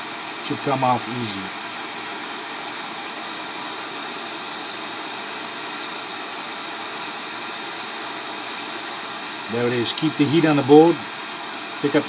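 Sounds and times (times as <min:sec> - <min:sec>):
heat gun blowing hiss: 0:00.0 - 0:12.0.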